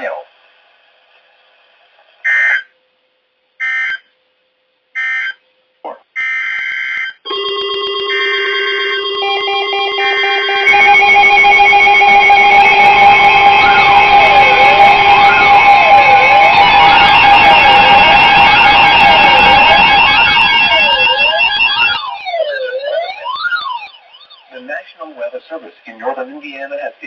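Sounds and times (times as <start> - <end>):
alarm tones and beeping: 2.2 - 2.7, 3.6 - 4.1, 5.0 - 5.4, 6.2 - 24.7
screeching data tone bursts: 2.2 - 2.7, 3.6 - 4.1, 8.1 - 23.9
siren-like wail: 2.2 - 2.7, 3.6 - 4.1, 5.0 - 5.4, 6.2 - 24.7.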